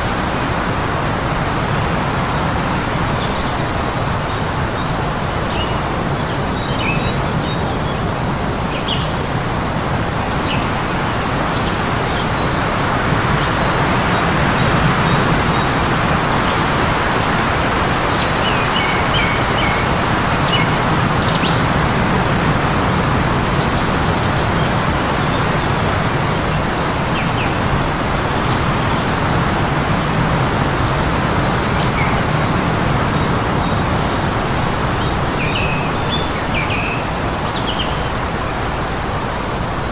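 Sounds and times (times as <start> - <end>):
heavy wind blowing: 0.0 - 39.9.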